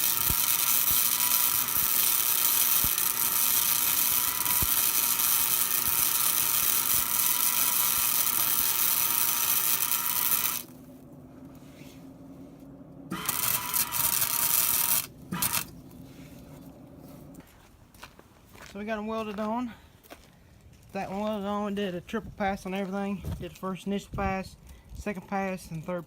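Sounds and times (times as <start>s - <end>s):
welding arc sizzling: 0.0s - 11.0s, 13.1s - 17.4s.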